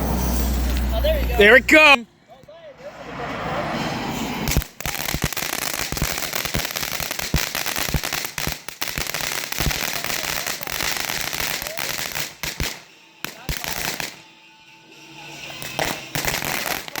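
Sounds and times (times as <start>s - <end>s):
firework crackling and popping: 4.3s - 14.3s, 15.4s - 17.0s.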